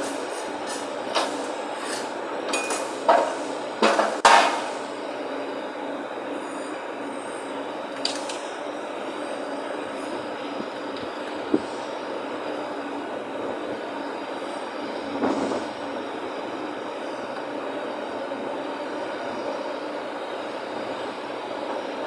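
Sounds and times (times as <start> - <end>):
steady mechanical hum: 0.0 - 22.0.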